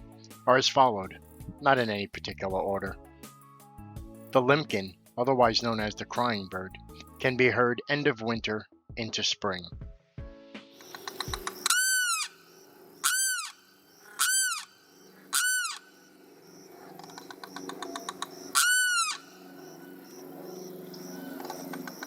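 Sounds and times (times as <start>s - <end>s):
limpkin wailing cries: 13.0s - 14.7s, 15.3s - 15.9s, 18.5s - 19.4s.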